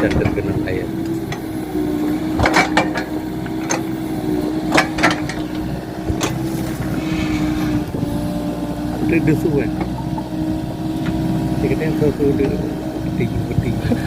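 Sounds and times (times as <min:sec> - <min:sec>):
excavator diesel engine humming: 0:00.0 - 0:14.0
sharp knocks and clunks: 0:02.3 - 0:03.9, 0:04.7 - 0:07.8.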